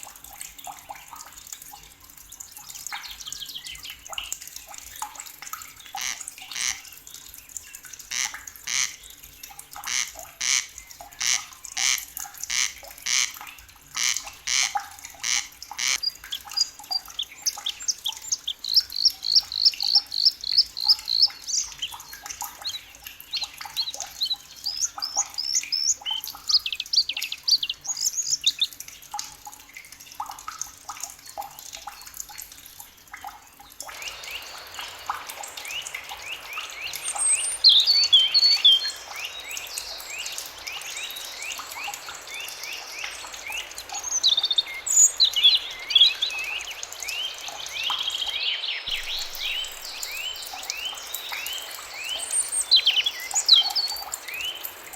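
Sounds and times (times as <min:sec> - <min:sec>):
rising bird chirps: 0:33.9 - 0:54.9.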